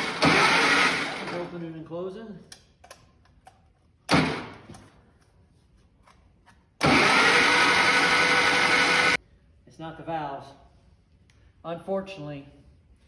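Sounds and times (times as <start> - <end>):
tractor starter cranking engine: 0.0 - 1.6, 4.1 - 4.7, 6.8 - 9.2.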